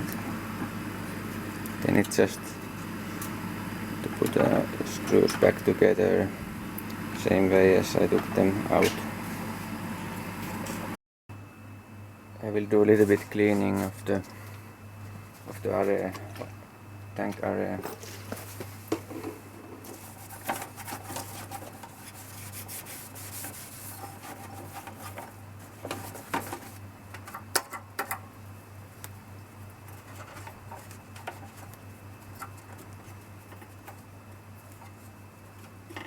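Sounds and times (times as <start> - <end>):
hand rubbing and scraping: 13.0 - 14.2, 17.9 - 26.8.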